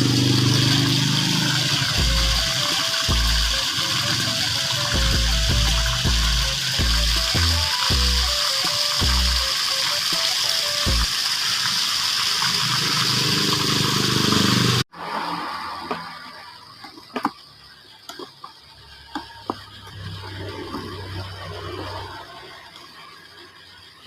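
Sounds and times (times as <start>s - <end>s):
loud steady hiss: 0.0s - 14.8s
smartphone ringtone with bass beat: 1.9s - 11.1s.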